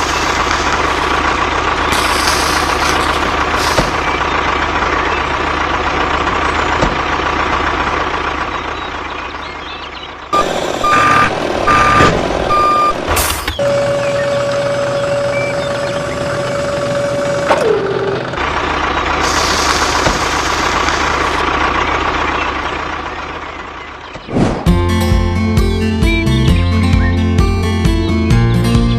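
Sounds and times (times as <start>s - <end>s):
vehicle engine running: 0.0s - 28.9s
short beeps: 10.4s - 13.0s.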